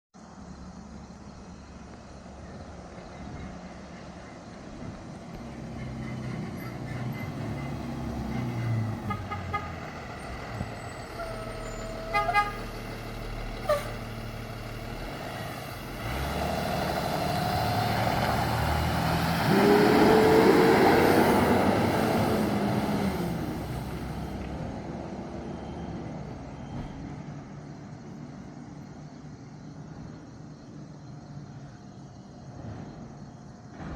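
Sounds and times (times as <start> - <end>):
road noise: 0.2 - 33.9
truck engine driving past: 1.7 - 29.0
truck horn honking: 6.7 - 12.9, 13.6 - 14.0.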